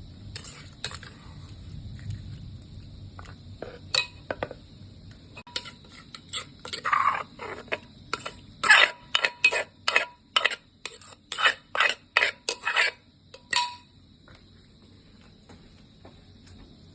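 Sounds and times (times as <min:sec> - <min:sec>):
utensils clinking and scraping dish: 0:00.4 - 0:01.2, 0:05.5 - 0:13.9.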